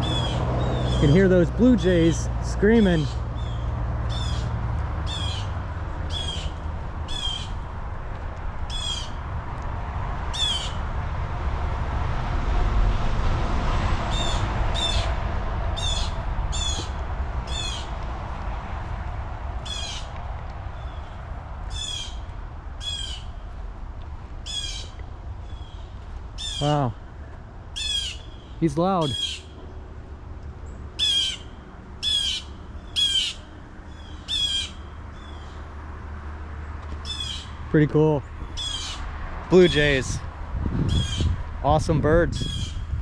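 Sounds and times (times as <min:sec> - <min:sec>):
blue jays screaming: 0:05.1 - 0:07.6, 0:08.7 - 0:09.2, 0:10.3 - 0:10.8, 0:15.8 - 0:17.9, 0:19.6 - 0:20.1, 0:21.7 - 0:22.2, 0:24.5 - 0:25.0, 0:26.4 - 0:26.8, 0:27.8 - 0:29.5, 0:31.0 - 0:35.6, 0:37.0 - 0:37.6, 0:38.6 - 0:40.0.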